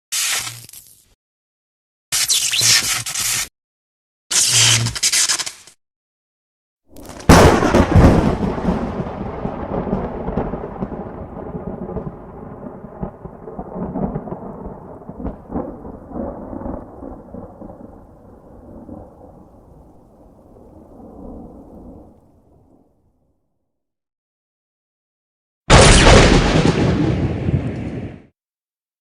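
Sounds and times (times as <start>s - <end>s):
loud crack and rumble: 6.9s - 19.1s.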